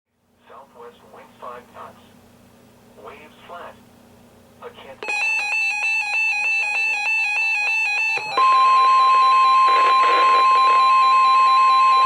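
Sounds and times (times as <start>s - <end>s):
pulsing two-tone alarm beeps: 5.0s - 12.0s
steady warning tone: 5.0s - 12.0s.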